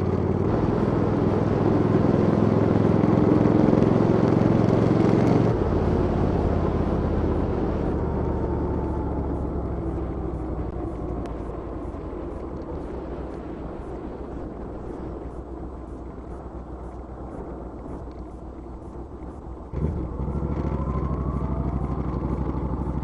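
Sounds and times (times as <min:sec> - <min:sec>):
loud vehicle engine: 0:00.0 - 0:13.6, 0:19.4 - 0:23.0.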